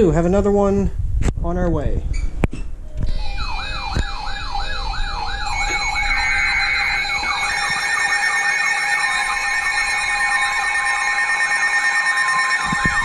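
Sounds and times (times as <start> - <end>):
steady alarm tones: 2.9 - 13.0
overlapping siren sweeps: 3.0 - 13.0
siren yelp alert tone: 3.0 - 13.0.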